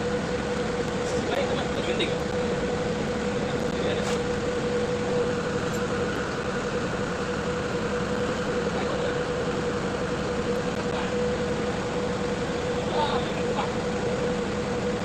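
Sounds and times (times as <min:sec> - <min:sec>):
diesel engine running: 0:00.0 - 0:15.0
steady whine: 0:00.0 - 0:15.0.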